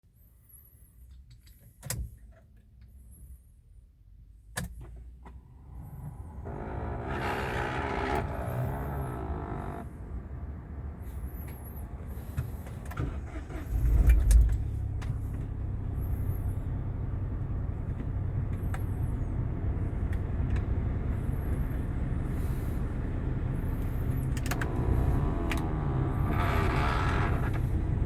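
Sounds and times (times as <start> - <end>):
car engine idling: 5.2 - 28.0
clicks: 24.2 - 27.7.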